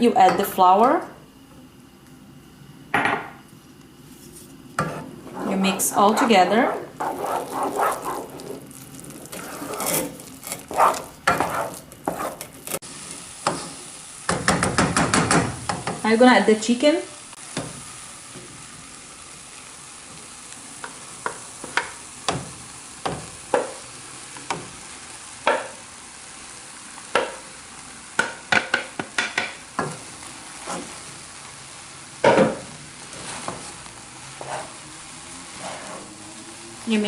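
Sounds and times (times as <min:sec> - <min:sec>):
utensil scraping and knocking a pan: 0:04.8 - 0:05.9, 0:06.6 - 0:12.8.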